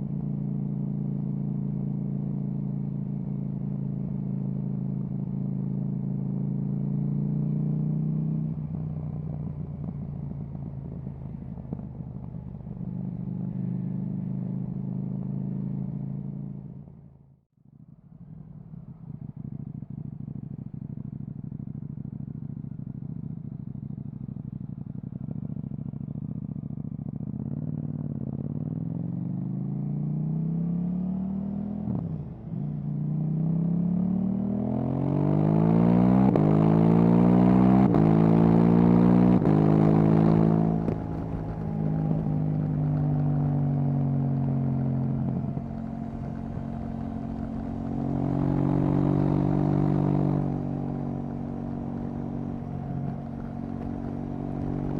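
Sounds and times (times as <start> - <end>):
motorcycle engine revving: 25.4 - 54.9.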